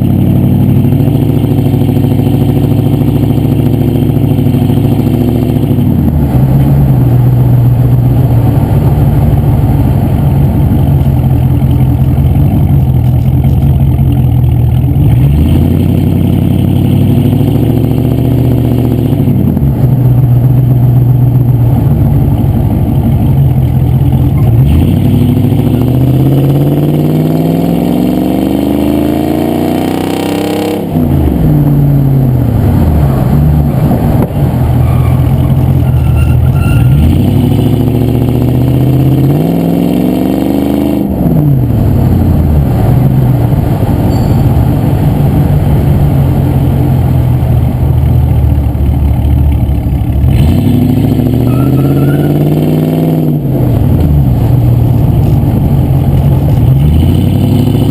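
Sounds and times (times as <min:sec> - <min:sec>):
car engine revving: 0:00.0 - 0:57.9.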